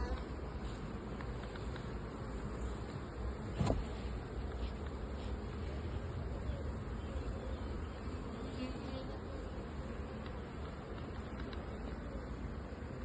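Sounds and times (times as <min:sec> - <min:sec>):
honeybees buzzing: 0:00.0 - 0:13.0.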